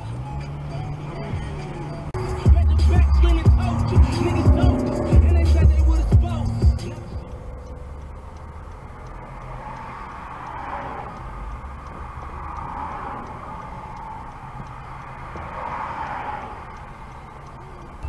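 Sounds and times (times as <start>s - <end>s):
car engine and road rumble: 0.0s - 18.0s
tyre and traffic noise: 0.0s - 18.0s.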